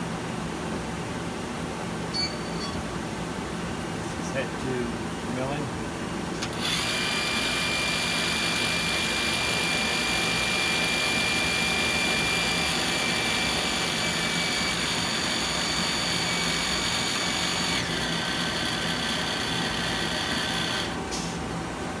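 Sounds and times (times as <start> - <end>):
small motor whining: 6.4 - 21.0.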